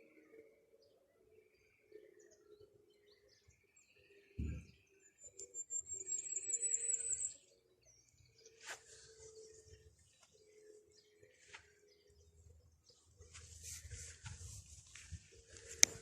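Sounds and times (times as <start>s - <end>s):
small birds chirping: 0.0s - 16.0s
short low thump: 4.4s - 4.8s.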